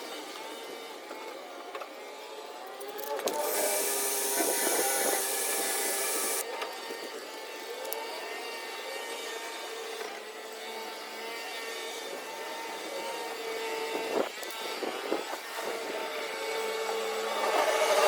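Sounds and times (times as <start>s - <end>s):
small electric motor whirring: 2.8s - 7.1s.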